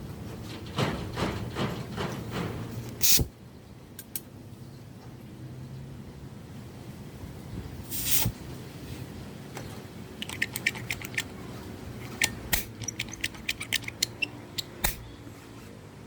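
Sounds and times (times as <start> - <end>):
quick sharp clicks and taps: 10.2 - 15.0.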